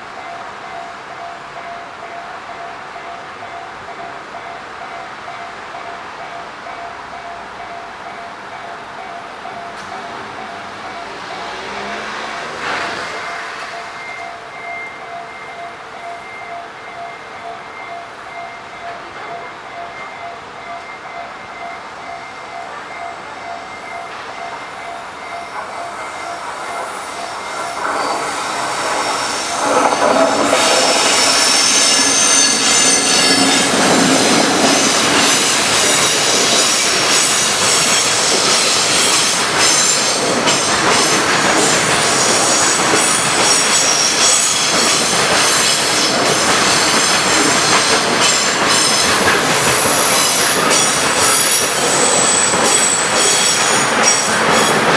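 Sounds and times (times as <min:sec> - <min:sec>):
freight train passing: 0:00.0 - 0:54.9
level-crossing warning bell: 0:00.0 - 0:54.9
wheel squeal: 0:10.1 - 0:15.0, 0:25.4 - 0:54.9.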